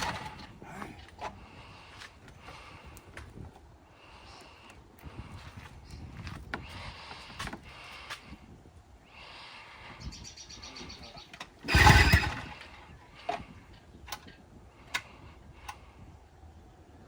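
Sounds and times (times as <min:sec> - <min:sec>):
outboard motor turning over: 0:00.0 - 0:00.6, 0:11.6 - 0:12.8
light ratcheting: 0:11.7 - 0:12.7.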